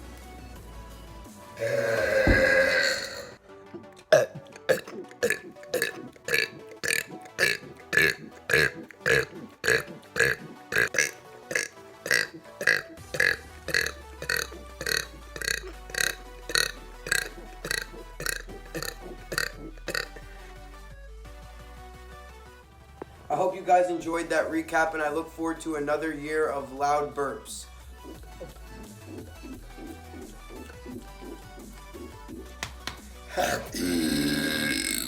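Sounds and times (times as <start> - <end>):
music: 0.0 - 35.0
short burps: 1.6 - 20.4, 33.3 - 35.0.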